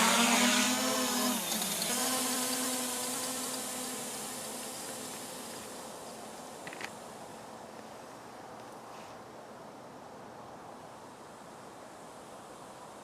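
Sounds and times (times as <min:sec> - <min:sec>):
drone propellers buzzing: 0:00.0 - 0:06.9.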